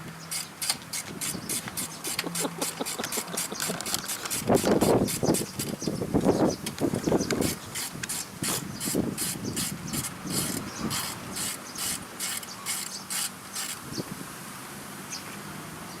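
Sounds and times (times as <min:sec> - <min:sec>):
hand ratchet clicking: 0:00.3 - 0:05.8, 0:06.7 - 0:13.8.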